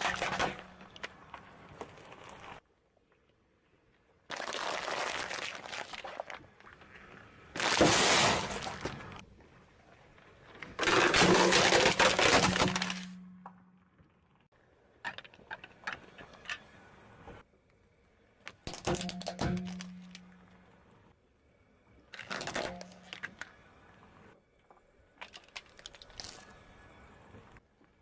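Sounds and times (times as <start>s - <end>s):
objects crushed under tyres: 0.0s - 2.6s, 7.5s - 9.2s, 10.6s - 13.7s, 18.7s - 20.6s.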